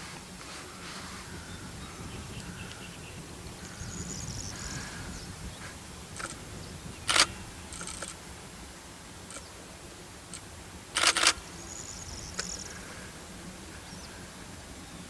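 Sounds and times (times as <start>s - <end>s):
quiet outdoor background noise: 0.0s - 15.0s
sharp clicking bursts: 6.1s - 6.4s, 7.0s - 8.2s, 9.2s - 9.6s, 10.3s - 12.8s.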